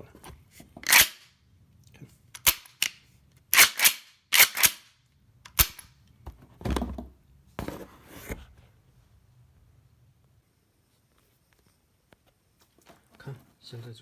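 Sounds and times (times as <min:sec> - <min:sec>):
metal parts scraping apart: 0:00.8 - 0:01.2
shotgun slide metal clacks: 0:00.8 - 0:01.2, 0:03.6 - 0:04.8.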